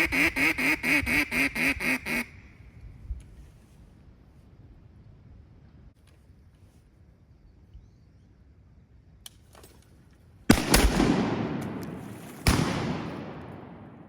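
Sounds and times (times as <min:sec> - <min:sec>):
shotgun blasts echoing: 0:10.5 - 0:14.0.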